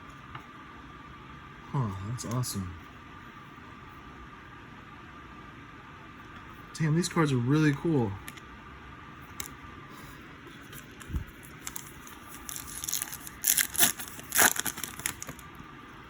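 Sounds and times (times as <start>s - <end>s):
cards clicking and rustling: 10.6s - 15.4s
foil wrapper crinkling and tearing: 10.7s - 15.5s.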